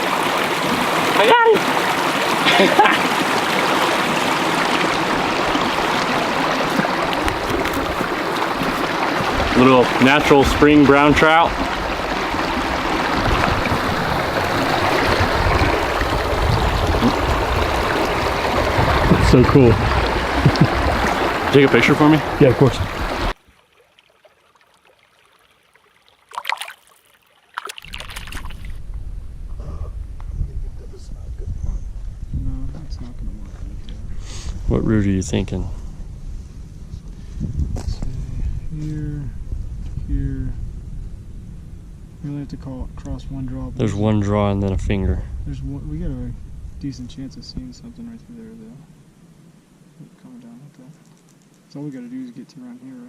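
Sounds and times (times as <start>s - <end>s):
creek water flowing: 0.0s - 28.8s, 46.8s - 53.0s
trickling stream: 0.0s - 28.8s, 45.7s - 53.0s
steady low rumble: 28.5s - 50.8s.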